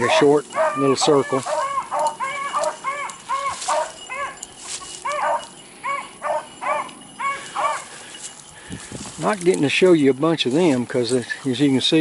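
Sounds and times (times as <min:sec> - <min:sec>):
hounds baying: 0:00.0 - 0:08.5.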